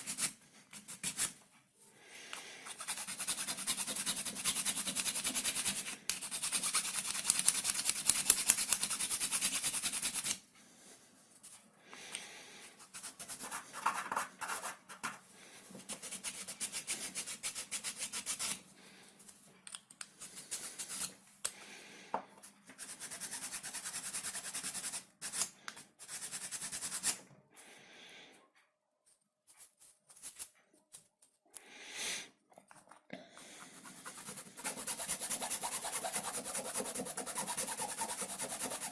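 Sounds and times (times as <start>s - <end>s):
sanding on plywood: 2.7s - 10.4s, 15.8s - 18.6s, 33.8s - 38.9s.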